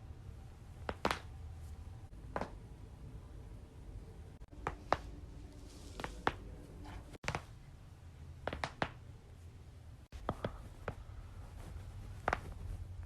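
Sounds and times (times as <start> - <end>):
neck joints cracking: 10.2 - 12.7.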